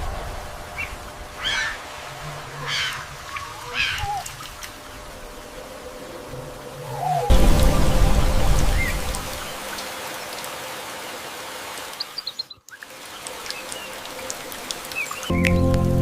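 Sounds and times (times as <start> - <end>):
rain falling: 0.0 - 16.0
bird chirps: 12.0 - 12.8
music with held notes: 15.3 - 16.0.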